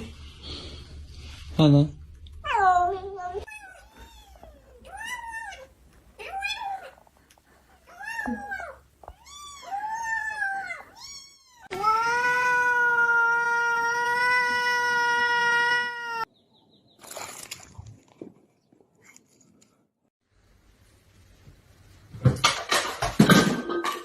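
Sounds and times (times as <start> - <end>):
cat meowing: 7.9 - 16.3
cat yowling: 7.9 - 16.3.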